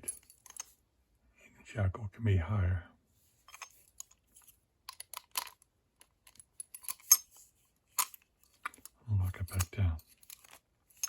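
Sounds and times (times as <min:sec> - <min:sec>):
padlock metal clicks and clinks: 0:04.8 - 0:07.4, 0:08.0 - 0:11.0.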